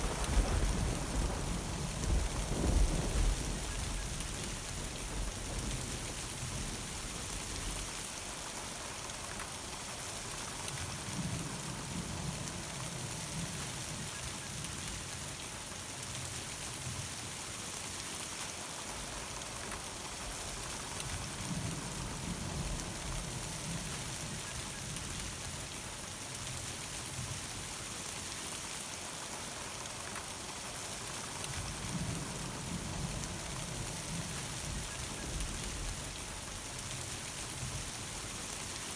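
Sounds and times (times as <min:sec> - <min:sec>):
thunder rumble: 0:00.0 - 0:07.8
rain pattering: 0:00.0 - 0:38.9.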